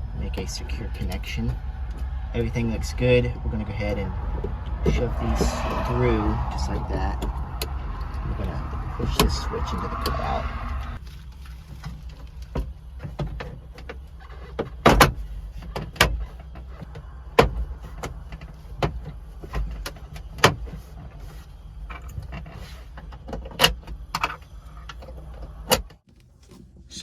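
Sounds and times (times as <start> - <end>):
steady low hum: 0.0 - 11.0.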